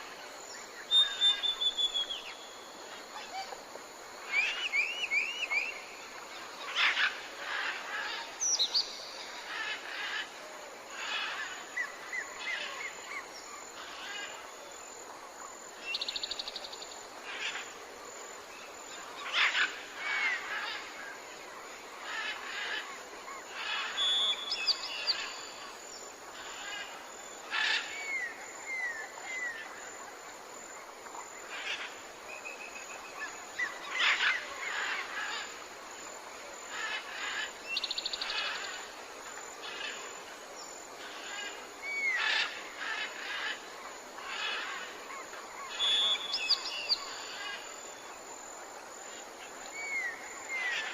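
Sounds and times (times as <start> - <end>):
insects hissing: 0.0 - 50.9
birds calling and trilling: 22.0 - 29.8, 31.4 - 35.6, 36.6 - 48.1.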